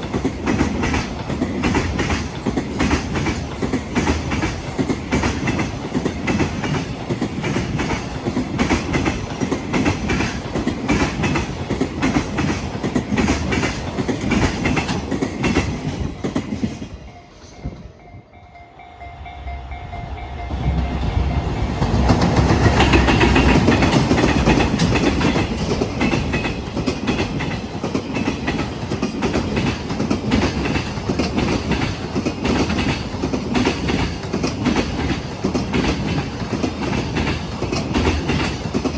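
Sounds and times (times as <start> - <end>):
train wheels clickety-clack: 0.0 - 18.1, 20.1 - 38.9
train rumble: 0.0 - 38.9.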